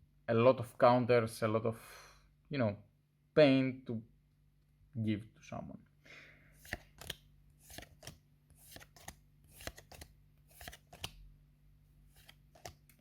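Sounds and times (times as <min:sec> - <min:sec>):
cards flicking and sliding: 0:06.6 - 0:11.2, 0:12.1 - 0:13.0.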